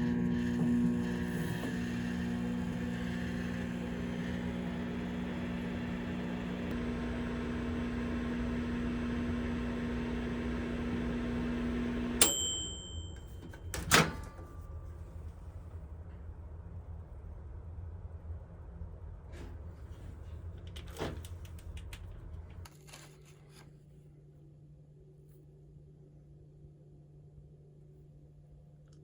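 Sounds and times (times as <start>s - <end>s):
microwave beep: 0.0s - 14.4s
microwave oven humming: 0.0s - 21.3s.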